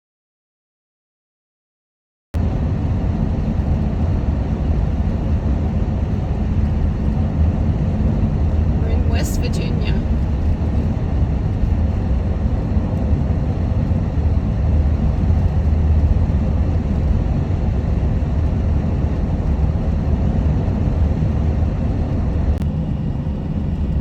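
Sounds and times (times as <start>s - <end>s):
minivan road and engine noise: 2.4s - 24.0s.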